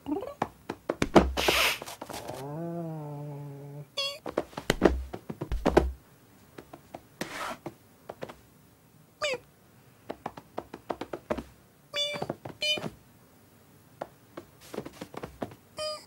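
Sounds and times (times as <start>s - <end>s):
soft thumps and knocks: 0.4s - 2.3s, 4.3s - 6.0s, 10.1s - 11.5s
brief swish: 1.4s - 2.0s
cartoon cat meow: 4.0s - 4.2s, 9.2s - 9.4s, 12.0s - 12.8s, 15.8s - 16.0s.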